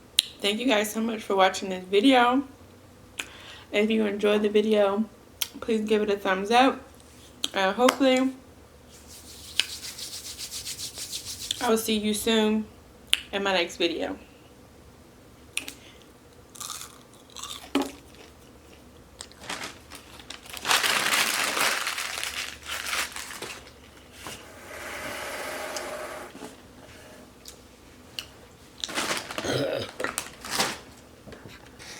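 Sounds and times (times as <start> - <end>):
chewing crunching: 16.5 - 19.4
paper wrappers crinkling: 19.2 - 24.4, 28.8 - 31.0.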